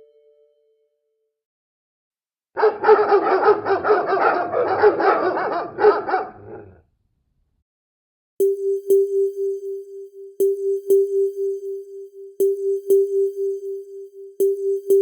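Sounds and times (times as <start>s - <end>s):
dog barking alert tone: 2.6s - 6.7s.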